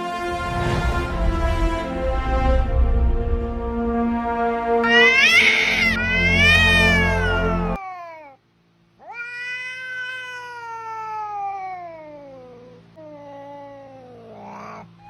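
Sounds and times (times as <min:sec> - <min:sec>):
cat meowing: 0:04.8 - 0:08.1, 0:09.0 - 0:12.4.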